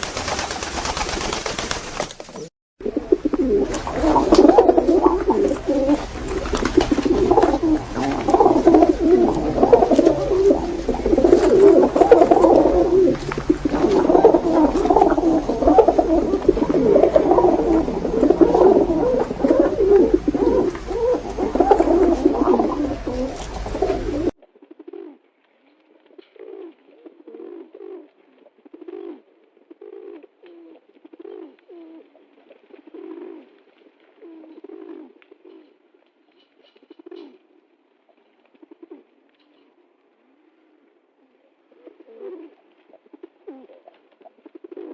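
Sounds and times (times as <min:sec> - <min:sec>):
pigeons cooing: 0:00.0 - 0:25.2, 0:26.2 - 0:35.8, 0:36.4 - 0:37.5, 0:38.5 - 0:44.9.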